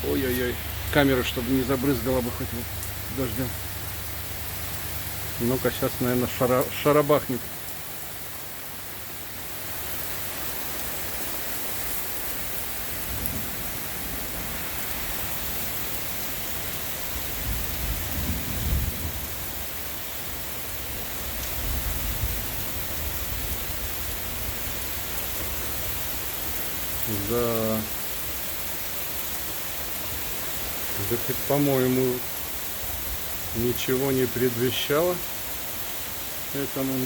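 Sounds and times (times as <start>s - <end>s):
heavy rain pouring: 0.0s - 37.0s
thunder rumbling: 17.3s - 19.6s.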